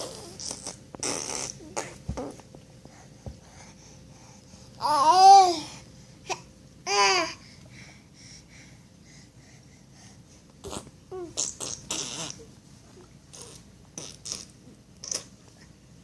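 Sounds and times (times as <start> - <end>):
baby making mouth noises: 0.0 - 2.4, 10.6 - 12.4, 13.3 - 15.3.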